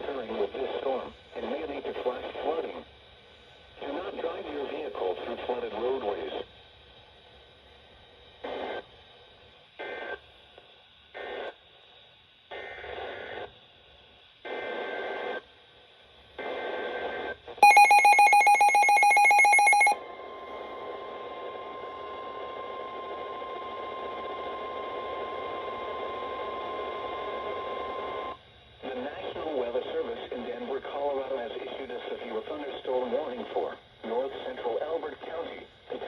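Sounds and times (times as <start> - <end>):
rapidly pulsing electronic beep: 17.6 - 20.0
steady attention tone: 17.6 - 20.0.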